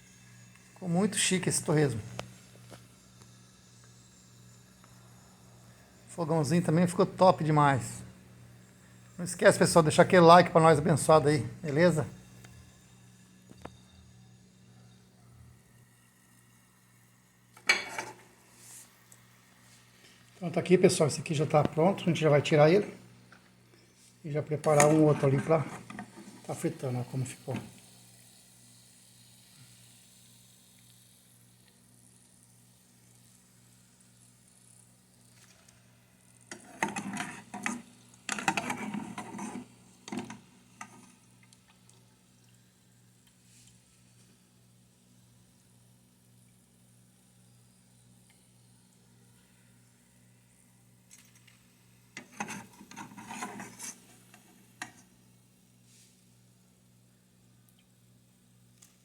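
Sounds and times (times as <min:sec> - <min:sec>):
low steady hum: 0:00.0 - 0:59.0
pork sizzling in oil: 0:00.0 - 0:59.0
kitchenware clattering and scraping: 0:17.6 - 0:18.3, 0:24.6 - 0:26.6, 0:36.5 - 0:41.1, 0:52.2 - 0:55.0.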